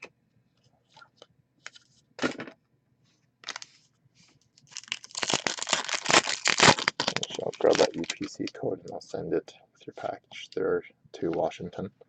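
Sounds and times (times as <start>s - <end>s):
packaging crinkling and tearing: 3.4s - 3.7s, 4.7s - 8.6s
packaging rustling: 3.4s - 3.7s, 4.6s - 8.5s.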